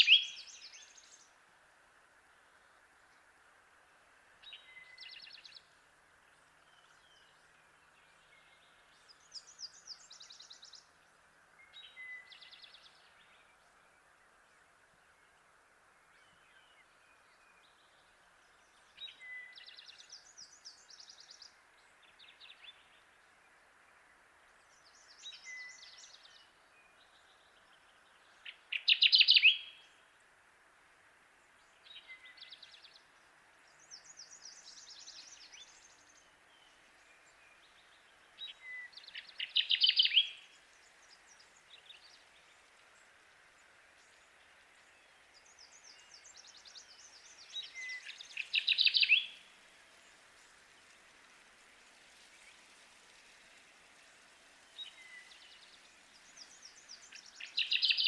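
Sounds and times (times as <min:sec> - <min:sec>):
warbler singing: 0:00.0 - 0:01.3, 0:24.6 - 0:30.0, 0:31.4 - 0:58.0
faint background hiss: 0:00.0 - 0:58.0.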